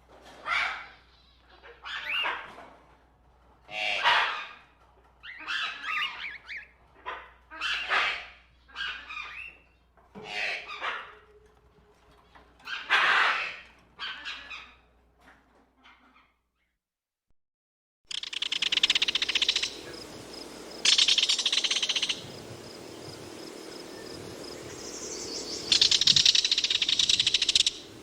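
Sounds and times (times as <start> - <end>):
bird calling: 18.1 - 28.0.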